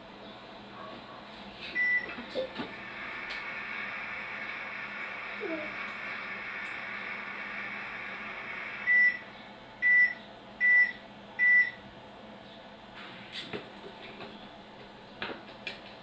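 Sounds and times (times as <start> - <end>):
toy microwave humming: 1.8 - 11.8.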